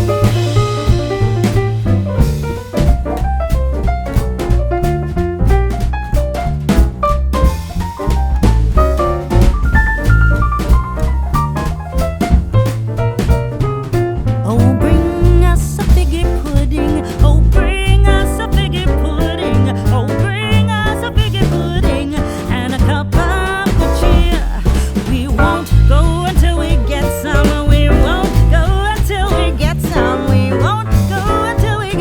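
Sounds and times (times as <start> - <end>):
music with strong bass beat: 0.0 - 16.8.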